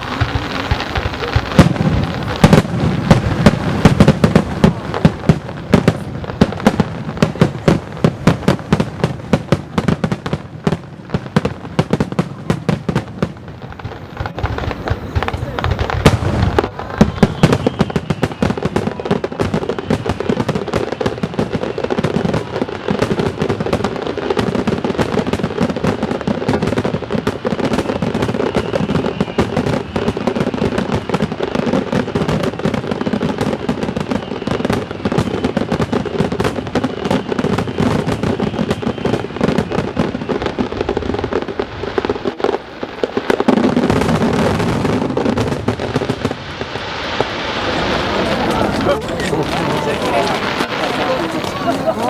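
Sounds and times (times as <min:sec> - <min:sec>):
fireworks bangs and crackling: 0:00.0 - 0:52.0.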